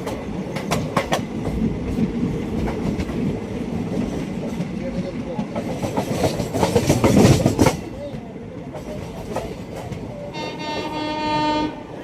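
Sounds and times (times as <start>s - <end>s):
train wheels clattering: 0.0s - 11.0s
train horn blast: 10.3s - 12.0s.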